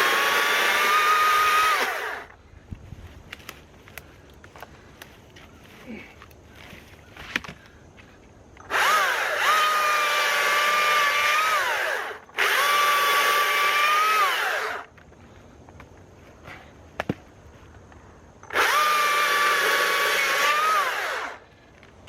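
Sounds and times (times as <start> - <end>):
electric chainsaw motor whining: 0.0 - 2.4, 8.6 - 14.9, 18.4 - 21.4.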